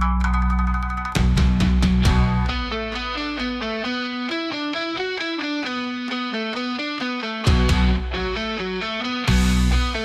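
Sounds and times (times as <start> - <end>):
drum hits: 0.0 - 2.9, 7.5 - 8.4, 9.3 - 10.0
sustained bass: 0.0 - 3.7, 7.5 - 10.0
plucked string music: 0.0 - 9.9.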